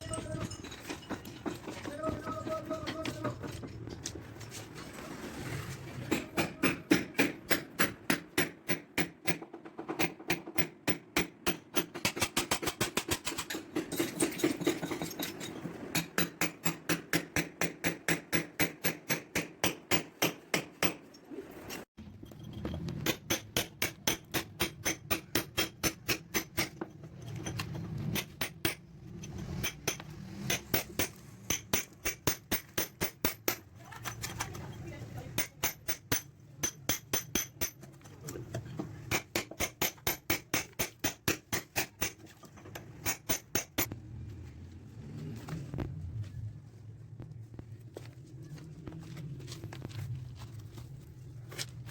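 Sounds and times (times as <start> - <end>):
hammer striking: 6.1 - 15.2, 15.9 - 21.1, 23.0 - 33.7, 35.3 - 37.9, 39.1 - 43.9.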